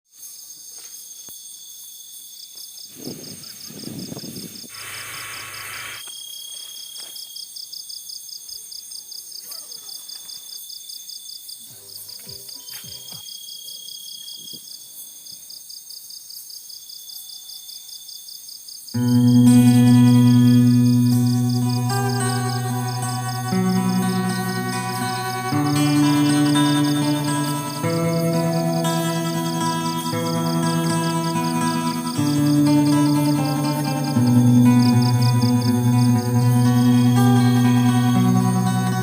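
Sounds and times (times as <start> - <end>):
crickets and insects trilling: 0.1 - 39.0
burst of loud noise: 4.7 - 6.0.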